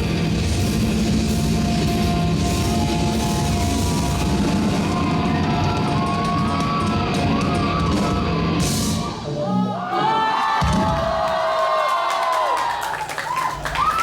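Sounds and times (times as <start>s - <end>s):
rock band playing live: 0.0s - 9.3s.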